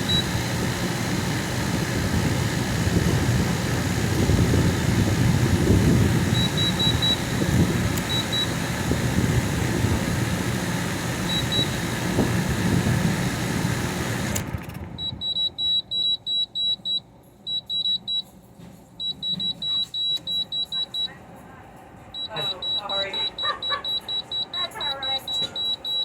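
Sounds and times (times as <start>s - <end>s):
air conditioner whooshing: 0.0s - 26.0s
rapid high-pitched electronic beeps: 22.2s - 26.0s.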